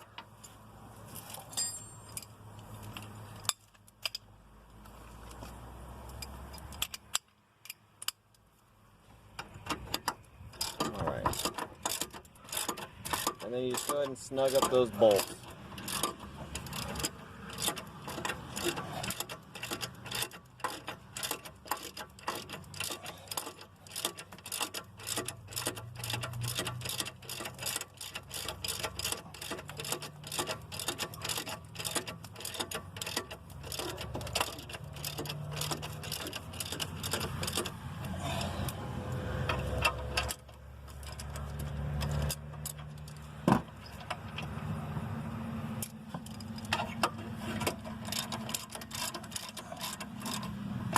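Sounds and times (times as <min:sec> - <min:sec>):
hand ratchet clicking: 0:09.4 - 0:38.8, 0:45.8 - 0:50.6.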